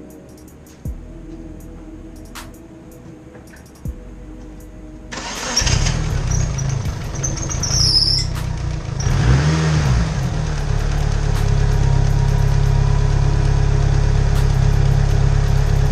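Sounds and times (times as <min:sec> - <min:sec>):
car engine starting and running: 0:05.1 - 0:15.9
high belt squeal: 0:05.2 - 0:09.1.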